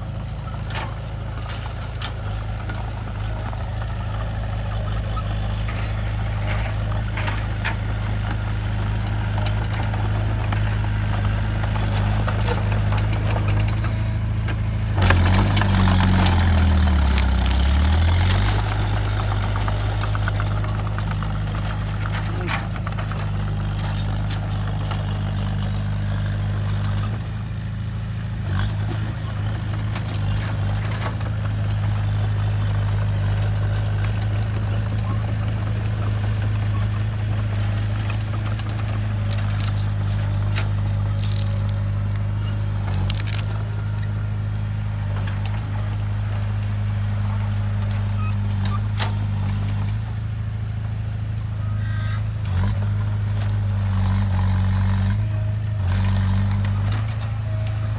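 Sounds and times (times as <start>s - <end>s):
diesel engine running: 0.0s - 57.9s
metal clanks and knocks: 0.3s - 27.7s.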